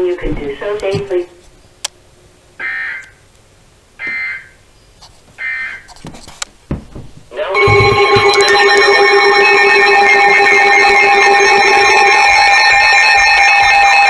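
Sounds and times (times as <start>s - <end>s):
low thump: 6.7s - 8.3s
loud sustained steady tones: 7.3s - 14.0s
buzzy alert data tones: 7.4s - 14.0s.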